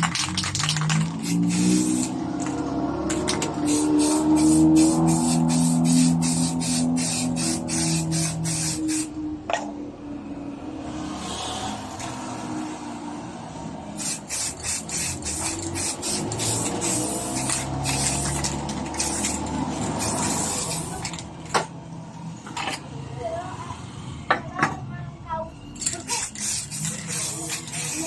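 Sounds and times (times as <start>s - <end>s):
short rapid hissing bursts: 1.2s - 2.2s, 3.6s - 9.1s, 14.0s - 21.1s, 26.0s - 28.0s.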